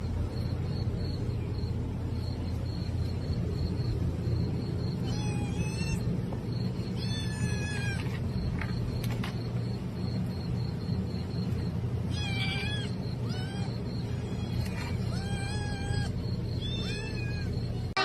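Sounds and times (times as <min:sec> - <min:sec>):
steady low rumble: 0:00.0 - 0:18.0
cat meowing: 0:05.0 - 0:06.0, 0:06.9 - 0:08.1, 0:12.1 - 0:18.0.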